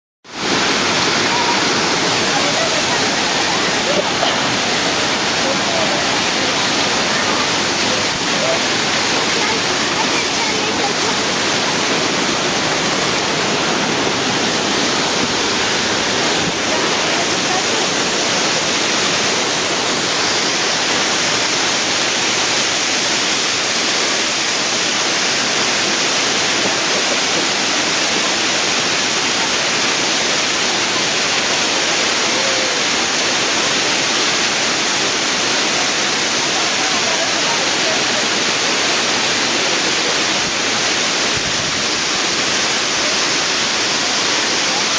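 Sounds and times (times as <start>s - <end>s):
waterfall rushing: 0.3s - 44.9s.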